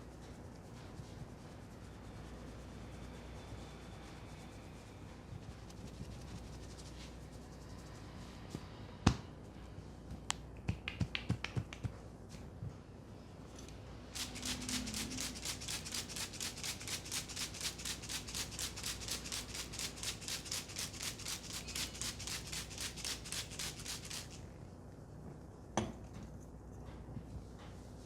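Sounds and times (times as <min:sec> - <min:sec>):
hands rubbing hair: 0:04.0 - 0:08.1, 0:10.5 - 0:12.6, 0:14.2 - 0:24.4.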